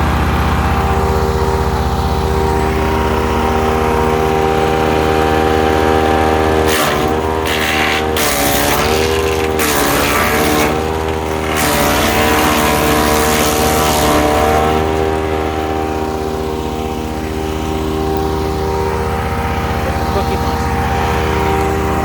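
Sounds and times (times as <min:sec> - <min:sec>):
wood chipper engine running: 0:00.0 - 0:22.0
branches being chipped: 0:06.6 - 0:16.0.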